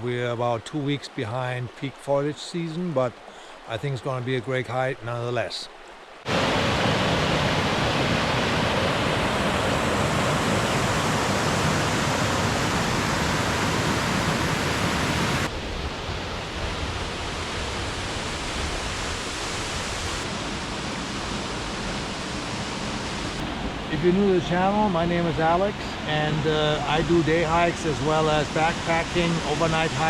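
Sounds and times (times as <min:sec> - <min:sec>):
waterfall roaring: 0:06.3 - 0:15.5, 0:17.1 - 0:30.0.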